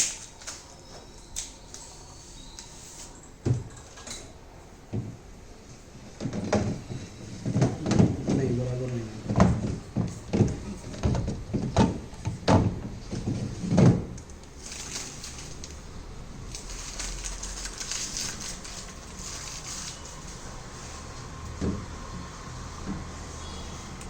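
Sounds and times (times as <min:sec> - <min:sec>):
steady rustling hiss: 0:00.0 - 0:24.0
knocks and thumps: 0:09.2 - 0:14.1.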